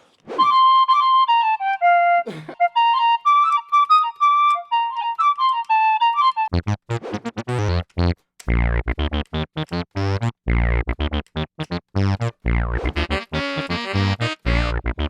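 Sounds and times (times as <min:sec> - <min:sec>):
buzzy bass synthesizer notes: 0:06.5 - 0:15.0.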